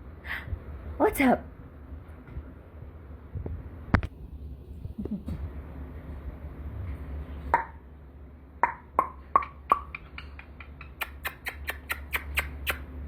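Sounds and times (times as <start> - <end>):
kiss-like mouth clicks: 8.6 - 12.9.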